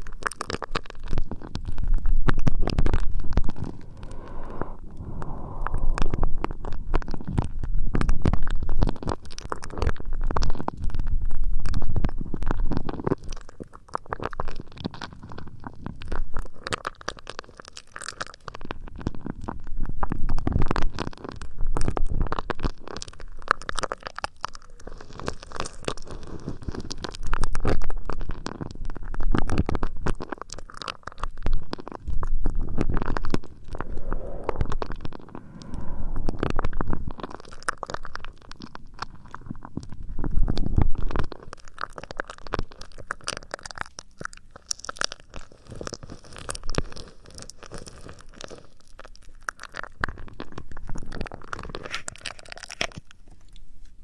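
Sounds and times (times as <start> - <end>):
crackly scratching: 0.0 - 54.0
muffled rubbing on microphone: 32.6 - 37.7.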